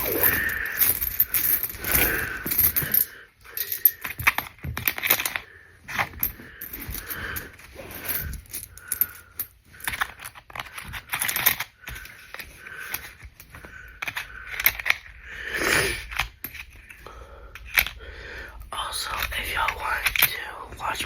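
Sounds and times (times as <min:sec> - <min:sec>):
coins clinking: 0:00.0 - 0:11.7
coins scraping: 0:00.0 - 0:17.1.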